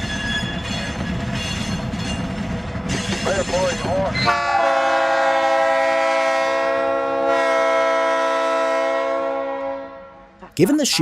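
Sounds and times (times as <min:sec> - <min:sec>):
train horn blast: 0:04.2 - 0:10.4.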